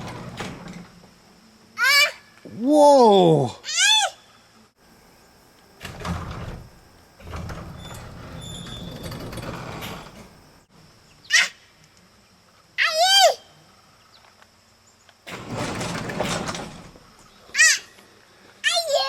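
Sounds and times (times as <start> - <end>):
garage door opener rumbling: 0.0 - 1.1, 5.8 - 10.7, 15.3 - 17.3.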